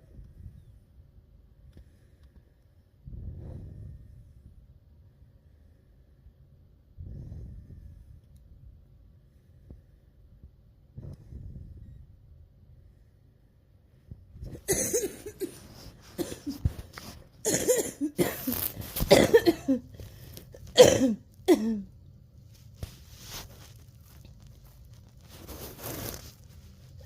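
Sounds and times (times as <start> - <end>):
faint breathing: 1.7 - 8.3, 19.8 - 20.7
harsh coughing: 14.6 - 20.0, 20.6 - 21.9.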